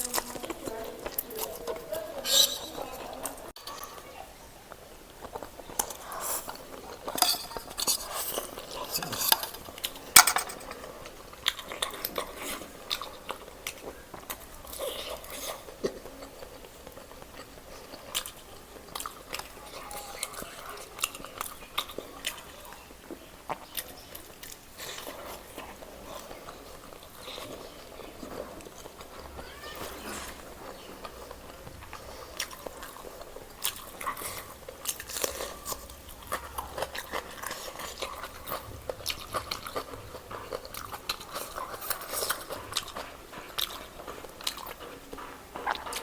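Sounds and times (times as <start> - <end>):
chewing: 0.0 - 46.0
utensils clinking on dish: 2.2 - 3.8, 5.8 - 10.9.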